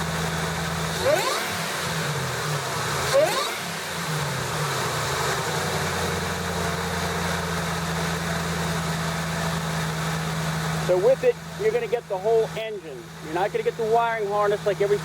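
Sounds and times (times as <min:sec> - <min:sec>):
car engine revving and idling: 0:00.0 - 0:15.0.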